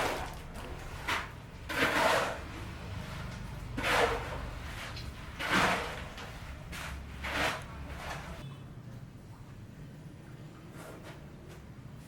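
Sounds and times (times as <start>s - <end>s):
rough scraping strokes: 0.0s - 8.4s.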